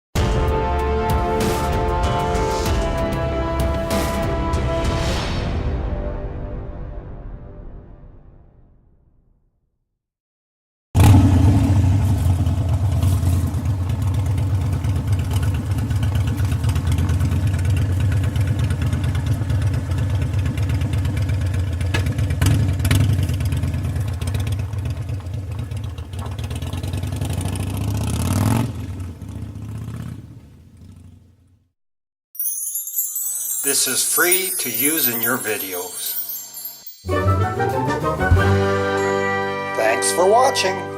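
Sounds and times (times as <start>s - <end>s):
motorcycle engine running: 11.0s - 31.7s.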